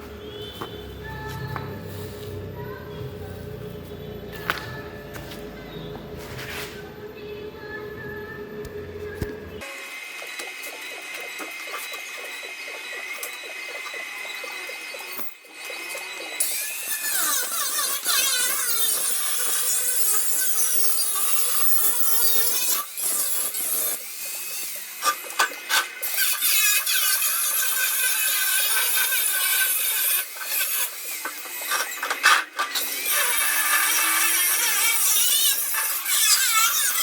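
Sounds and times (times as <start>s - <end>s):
harsh scraping on sheet steel: 0.3s - 5.4s, 6.2s - 6.9s.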